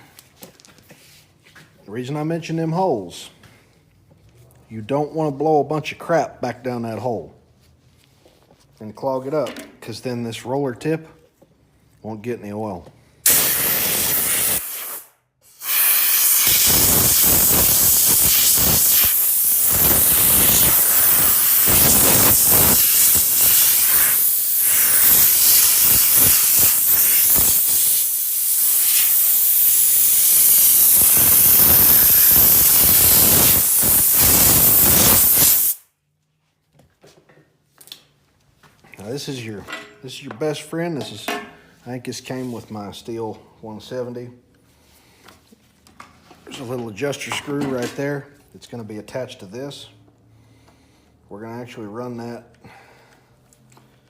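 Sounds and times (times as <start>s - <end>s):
compressed air blow gun hissing: 13.2s - 35.8s.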